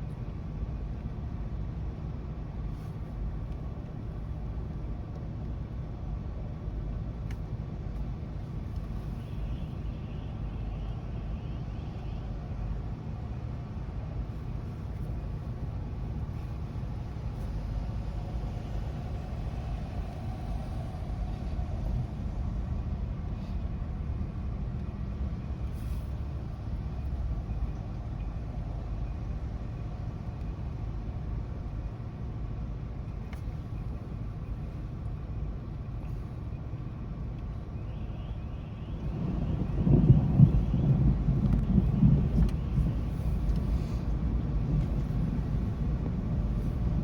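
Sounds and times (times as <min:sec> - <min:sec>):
thunderstorm rumble: 0:11.6 - 0:31.0, 0:39.0 - 0:47.0.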